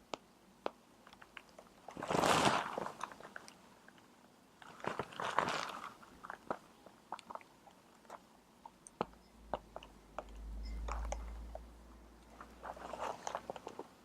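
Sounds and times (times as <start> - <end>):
soft low rumble: 9.3 - 13.4.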